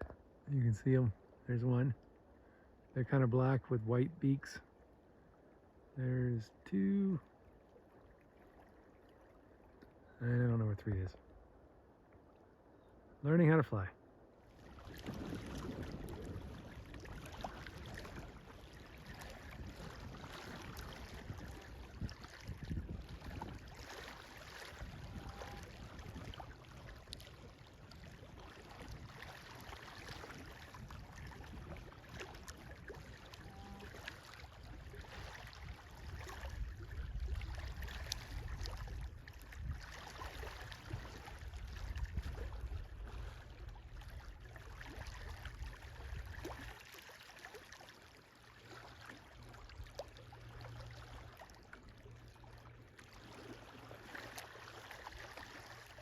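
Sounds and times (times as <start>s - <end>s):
wind buffeting microphone: 14.7s - 34.0s, 34.6s - 46.6s.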